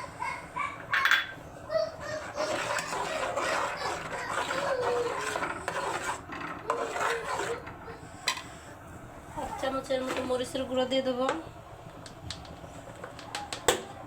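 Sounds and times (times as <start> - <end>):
spoon scraping in cooking pan: 2.2 - 8.6.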